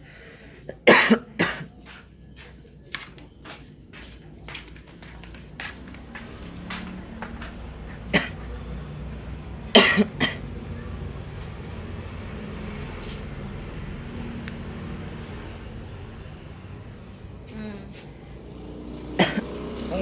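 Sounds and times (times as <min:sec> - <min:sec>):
steady low hum: 0:00.0 - 0:20.0
man coughing: 0:00.7 - 0:01.8, 0:08.1 - 0:08.4, 0:09.7 - 0:10.4, 0:19.2 - 0:19.5.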